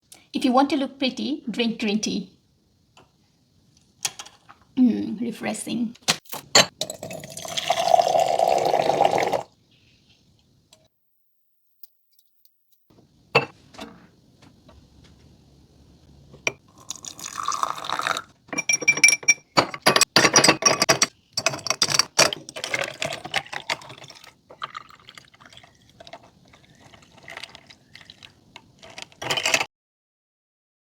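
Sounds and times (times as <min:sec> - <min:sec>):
tea pouring into a glass: 0:06.8 - 0:09.5, 0:16.7 - 0:18.3, 0:22.9 - 0:29.0.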